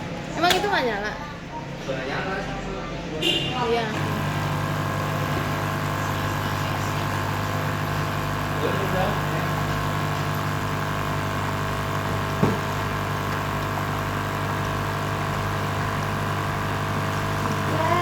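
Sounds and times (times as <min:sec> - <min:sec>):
small electric pump humming: 0:03.9 - 0:18.0.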